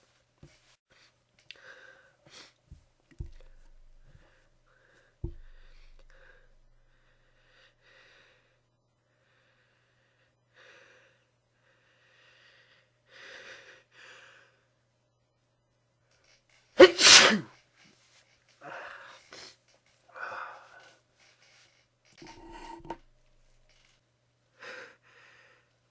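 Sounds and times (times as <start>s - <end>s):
faint breaths: 0.4s - 14.8s, 17.6s - 25.9s
person sneezing: 16.8s - 17.5s.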